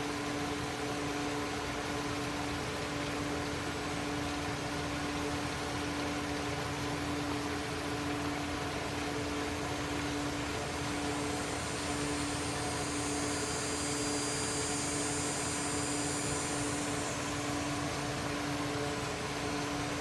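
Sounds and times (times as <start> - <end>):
low hum: 10.0 - 19.4
high thin multi-tone sound: 10.5 - 18.5.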